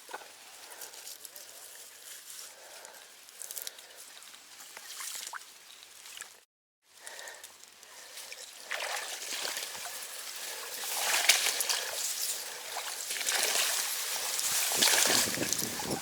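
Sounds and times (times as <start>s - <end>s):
water trickling and splashing: 4.6s - 6.4s, 7.9s - 16.0s.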